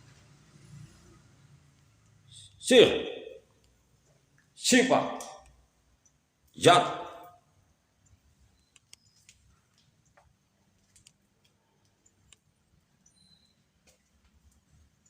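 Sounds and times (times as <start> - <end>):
faint clicks and ticks: 8.0 - 15.0.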